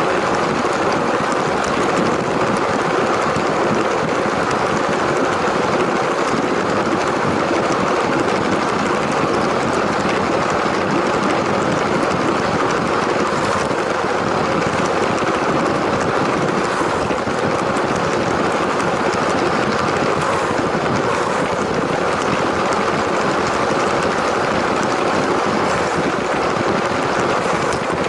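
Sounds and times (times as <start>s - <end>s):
toy train motor whirring: 10.2s - 23.6s.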